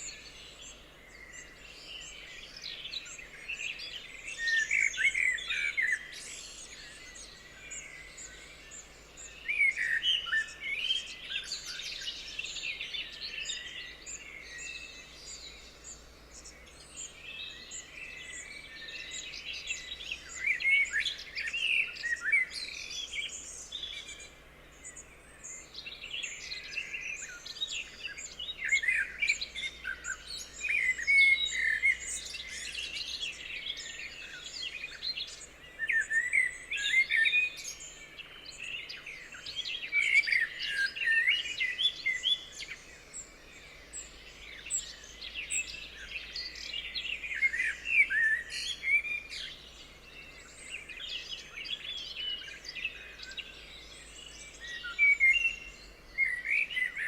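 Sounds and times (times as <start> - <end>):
songbirds singing and chirping: 0.0 - 57.0.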